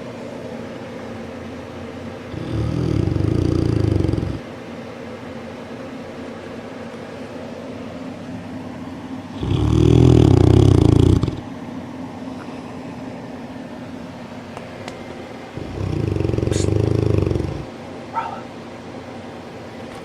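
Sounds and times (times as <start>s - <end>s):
dog breathing: 2.3s - 4.4s, 9.3s - 11.4s, 15.6s - 18.4s
dog snoring loudly: 2.3s - 4.4s, 9.3s - 11.4s, 15.6s - 18.4s.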